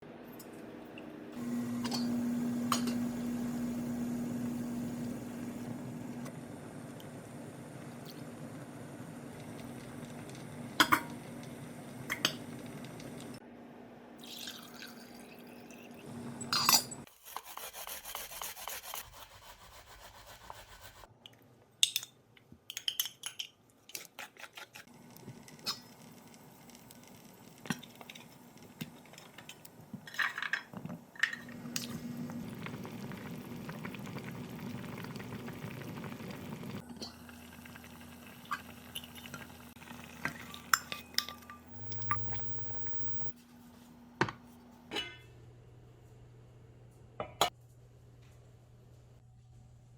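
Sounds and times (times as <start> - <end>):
liquid pouring and dripping: 14.2 - 16.0, 37.0 - 42.8
utensils clinking against pots: 15.7 - 17.1, 40.2 - 42.4.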